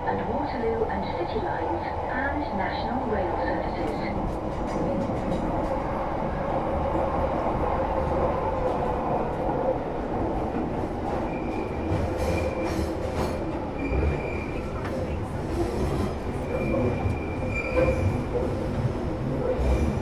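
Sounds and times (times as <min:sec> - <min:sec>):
train rumble and roar: 0:00.0 - 0:20.0
high wheel squeal: 0:16.5 - 0:18.3.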